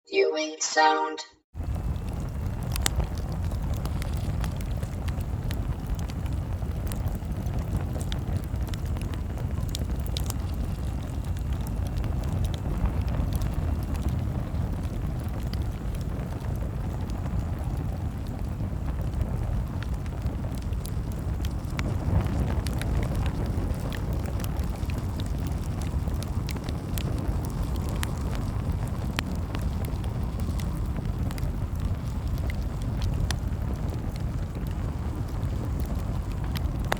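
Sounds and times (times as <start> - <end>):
bonfire rumble: 1.6 - 36.9
fire crackles and pops: 1.6 - 36.9.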